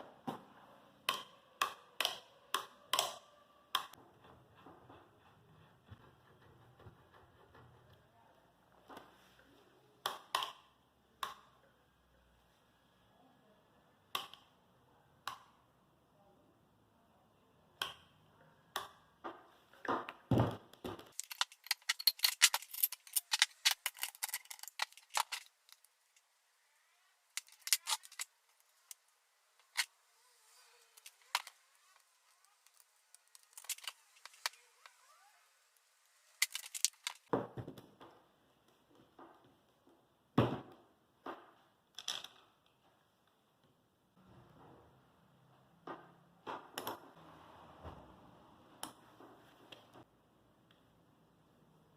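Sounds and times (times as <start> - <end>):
clattering and rattling: 21.0 - 25.8.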